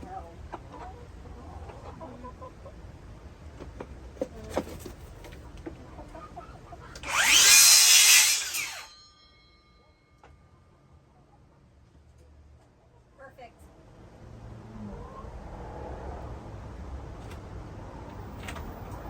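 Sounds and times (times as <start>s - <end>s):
chickens clucking: 0.0s - 7.1s
power drill driving a screw: 7.0s - 8.9s.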